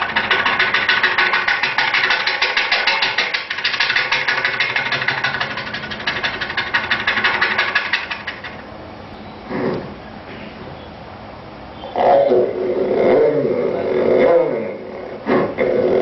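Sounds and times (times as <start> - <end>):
beatboxer imitating helicopter: 0.0 - 8.5.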